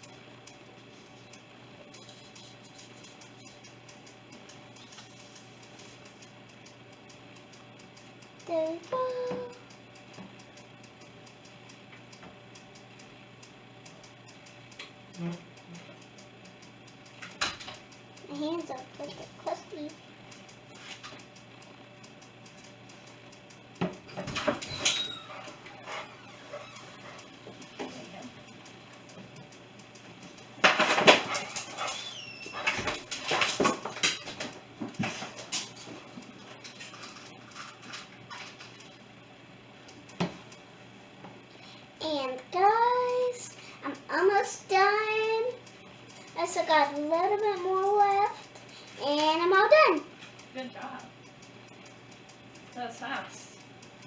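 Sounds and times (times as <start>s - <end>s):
faint regular ticking: 0.0s - 54.0s
steady low hum: 0.0s - 54.0s
pet whining and yelping: 24.2s - 27.6s, 31.2s - 33.0s.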